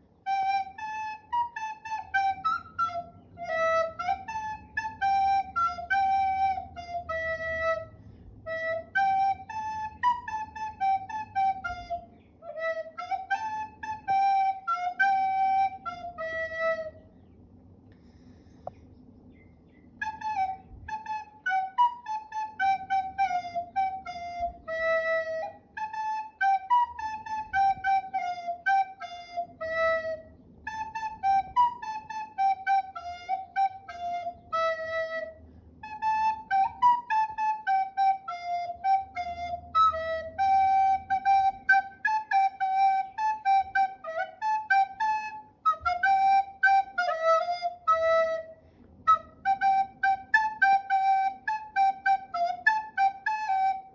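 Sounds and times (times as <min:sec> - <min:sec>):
solo recorder melody: 0:00.0 - 0:17.1, 0:20.0 - 0:53.9.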